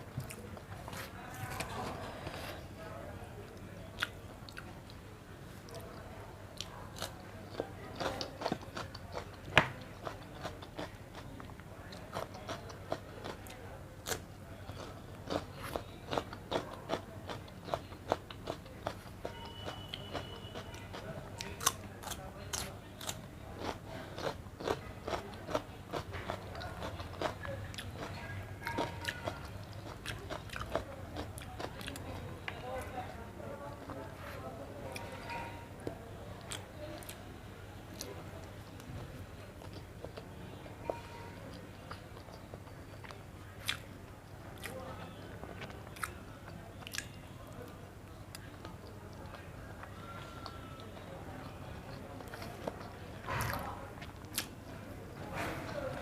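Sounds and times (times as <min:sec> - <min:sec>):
person chewing food: 0:06.6 - 0:32.2, 0:39.6 - 0:44.8, 0:45.6 - 0:47.2, 0:48.3 - 0:54.5.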